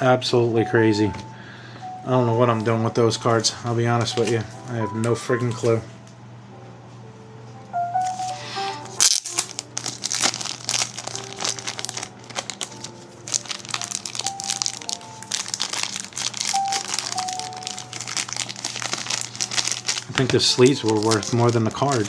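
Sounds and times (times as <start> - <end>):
soft background music: 0.0 - 22.0
plastic sleeves crinkling: 8.0 - 22.0.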